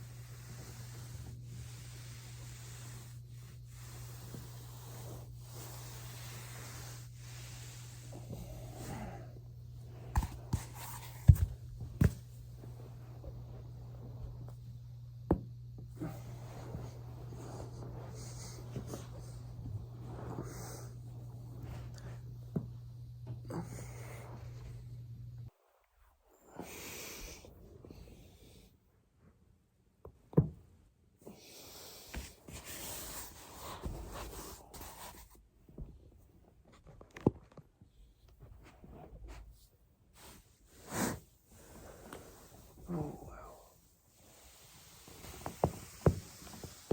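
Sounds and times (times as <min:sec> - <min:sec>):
rubbing on foam roller: 0:00.0 - 0:09.2, 0:09.8 - 0:14.6, 0:16.0 - 0:22.0, 0:38.4 - 0:46.9.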